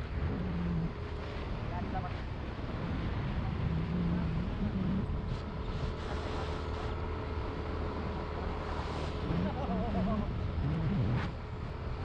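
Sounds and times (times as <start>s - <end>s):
wind on microphone: 2.6s - 6.4s, 8.6s - 12.0s.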